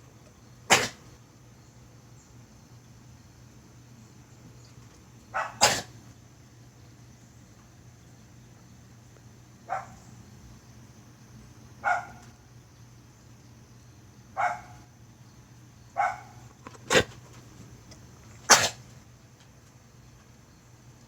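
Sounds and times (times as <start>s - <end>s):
dog coughing: 0.7s - 1.1s, 5.4s - 6.0s, 16.0s - 17.4s, 18.4s - 19.0s.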